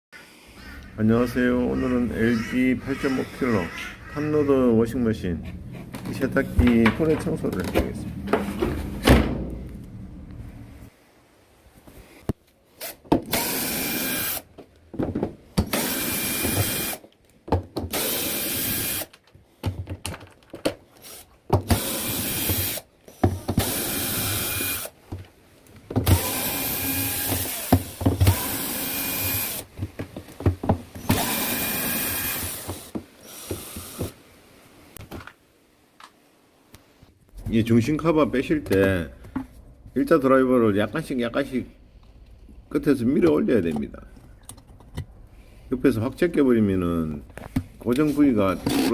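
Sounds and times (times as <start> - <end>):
cordless drill running: 13.3 - 14.4, 15.7 - 17.0, 17.9 - 19.1, 21.1 - 22.8, 23.6 - 24.9, 26.1 - 29.7, 31.0 - 34.1, 48.7 - 48.9.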